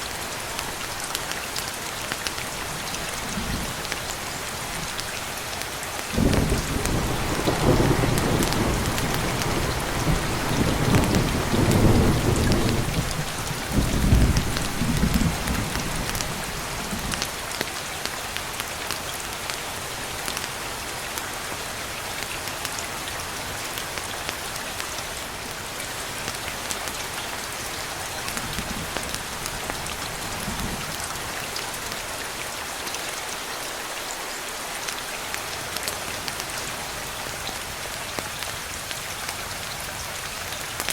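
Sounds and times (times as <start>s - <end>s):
steady rain falling: 0.0s - 40.9s
thunder rumbling: 6.2s - 17.2s.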